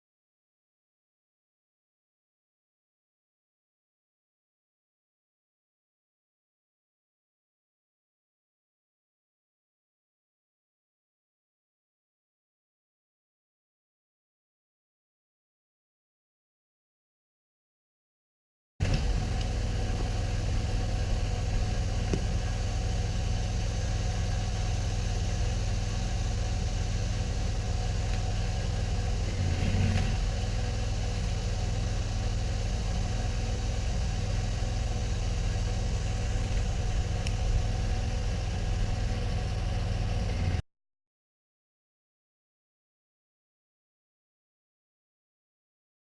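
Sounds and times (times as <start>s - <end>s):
pressure washer engine running: 18.8s - 40.6s.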